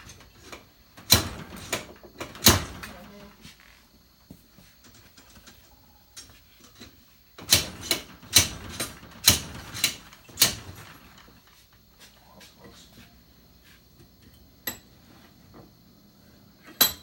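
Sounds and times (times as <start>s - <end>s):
mechanical clacks and knocks: 0.0s - 3.2s, 6.6s - 11.4s.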